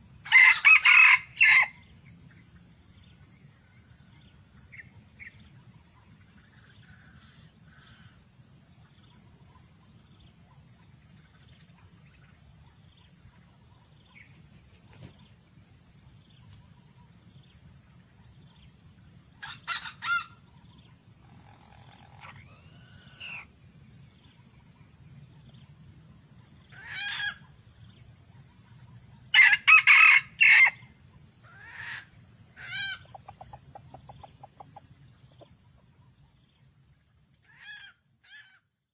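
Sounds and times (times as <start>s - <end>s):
roosters crowing: 0.3s - 1.8s, 21.6s - 23.4s, 26.7s - 27.4s, 29.3s - 30.8s, 32.6s - 33.2s
chickens clucking: 32.6s - 35.8s.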